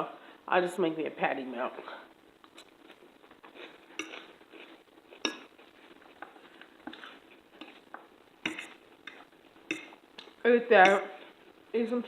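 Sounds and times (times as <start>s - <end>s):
cutlery clinking on a plate: 4.0s - 4.3s, 5.2s - 5.5s, 8.5s - 10.0s.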